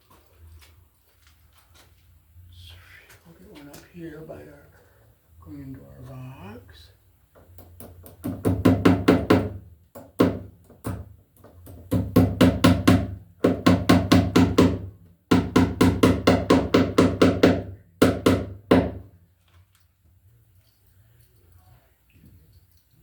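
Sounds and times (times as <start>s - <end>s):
hammer striking nails into wood: 7.6s - 19.1s.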